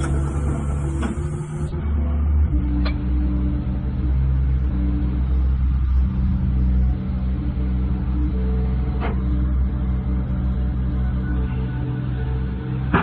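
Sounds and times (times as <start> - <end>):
excavator diesel engine running: 0.0 - 1.7.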